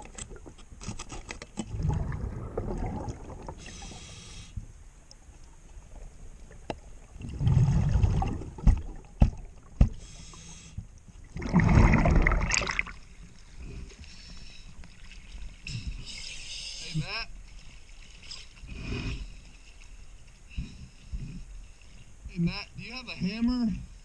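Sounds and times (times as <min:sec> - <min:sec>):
rush of exhaled bubbles: 0:01.6 - 0:04.1, 0:07.1 - 0:09.2, 0:11.2 - 0:13.1
hissing regulator inhalations: 0:03.6 - 0:04.7, 0:09.9 - 0:10.9.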